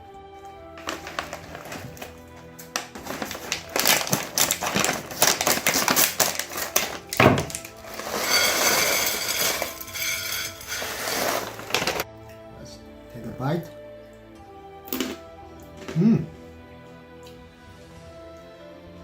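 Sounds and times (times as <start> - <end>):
plastic snack bag crinkling: 0.8 - 12.1.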